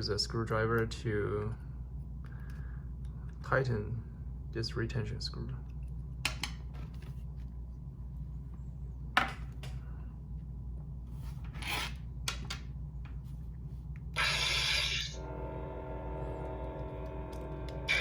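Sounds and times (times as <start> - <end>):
screwdriver scraping metal: 14.2 - 15.2.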